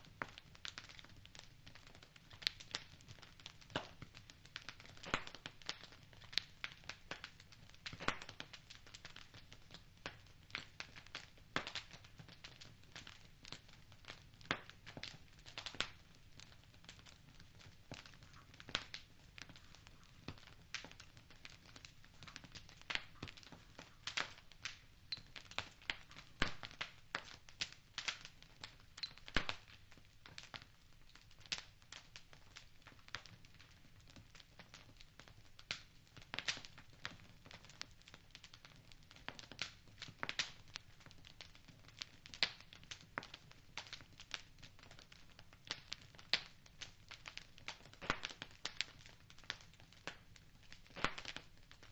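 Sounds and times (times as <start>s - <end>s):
faint steady hiss: 0.0s - 38.6s
wood fire crackling and popping: 0.0s - 51.9s.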